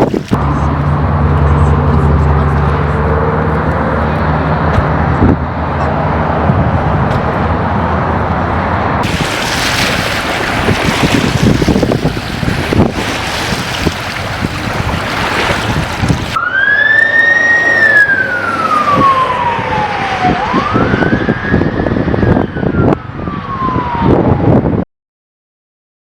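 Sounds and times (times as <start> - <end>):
wind buffeting microphone: 0.0 - 0.5, 9.0 - 16.4, 18.4 - 24.8
emergency vehicle siren wailing: 16.4 - 24.8.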